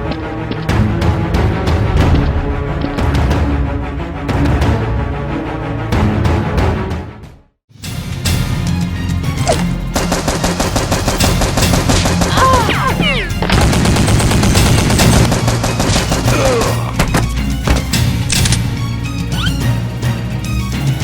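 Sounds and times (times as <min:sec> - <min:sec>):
background music: 0:00.0 - 0:21.0
rapid automatic gunfire: 0:10.0 - 0:12.6, 0:13.5 - 0:16.8.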